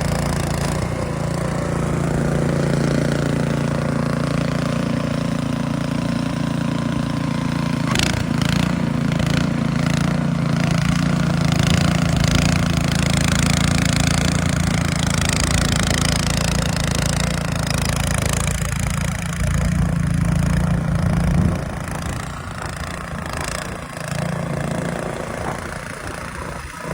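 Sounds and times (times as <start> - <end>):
engine running at low hum: 0.0 - 26.9.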